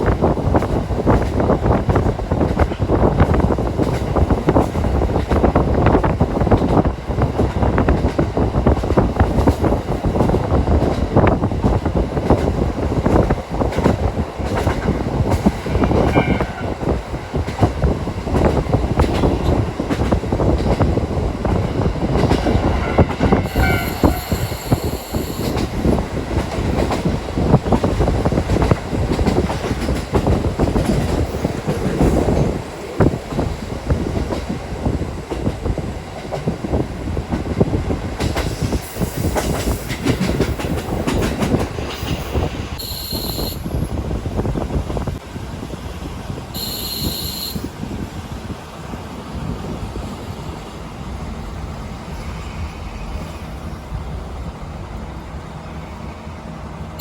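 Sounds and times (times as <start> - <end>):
railcar rumble: 0.0 - 57.0
high wheel squeals: 23.4 - 25.6, 42.8 - 43.8, 46.6 - 47.7.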